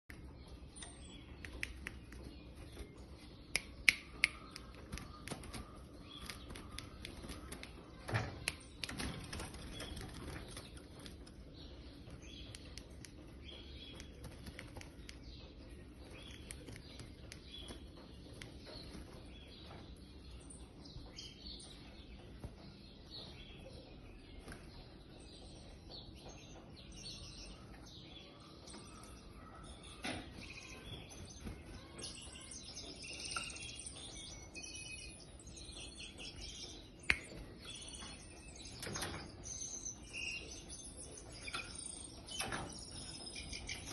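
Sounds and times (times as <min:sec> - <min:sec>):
sharp clicks: 0:00.8 - 0:02.8.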